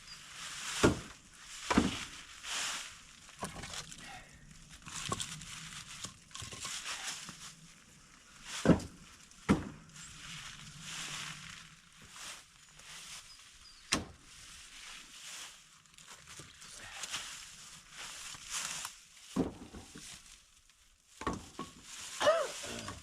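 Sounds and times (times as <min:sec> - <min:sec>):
scraping and rustling: 0:00.1 - 0:09.3
wooden knocks of firewood: 0:00.8 - 0:02.1, 0:03.4 - 0:03.8, 0:08.6 - 0:09.8, 0:19.3 - 0:20.1, 0:21.2 - 0:21.8.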